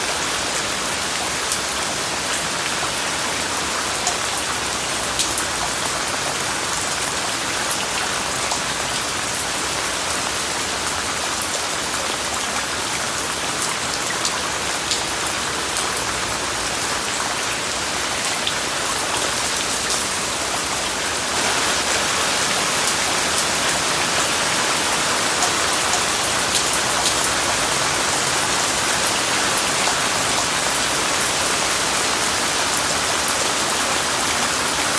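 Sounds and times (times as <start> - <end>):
steady rain falling: 0.0 - 34.9.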